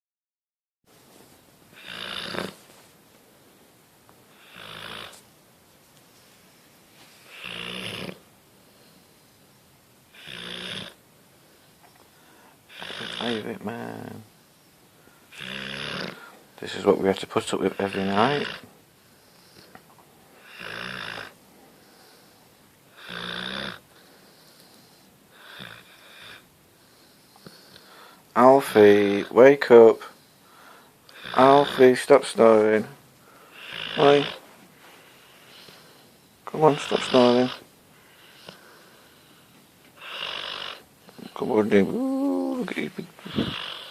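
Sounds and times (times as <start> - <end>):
dog snoring: 1.7 - 2.6, 4.3 - 5.2, 7.2 - 8.3, 10.1 - 11.0, 12.7 - 14.2, 15.3 - 16.3, 17.6 - 19.7, 20.4 - 22.3, 22.9 - 27.9, 31.1 - 32.1, 33.5 - 34.4, 35.5 - 39.3, 40.0 - 43.9.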